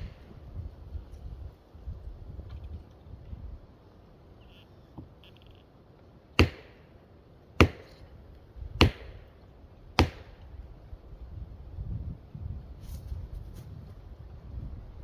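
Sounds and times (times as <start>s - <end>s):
axe chopping into tree trunk: 6.4s - 6.9s, 7.6s - 8.2s, 8.8s - 9.4s, 10.0s - 10.6s.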